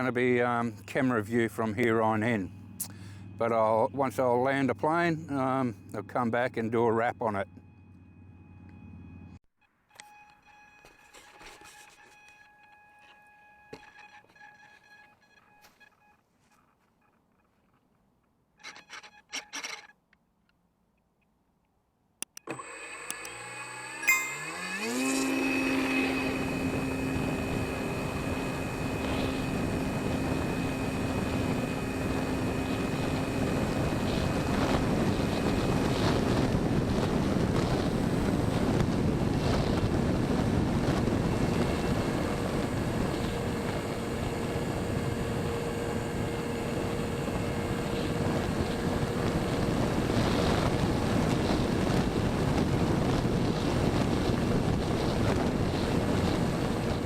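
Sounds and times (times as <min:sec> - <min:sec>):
electric motor propeller whine: 0:01.8 - 0:06.0, 0:07.3 - 0:16.0, 0:22.3 - 0:57.0
wind rushing over microphone: 0:25.7 - 0:57.0.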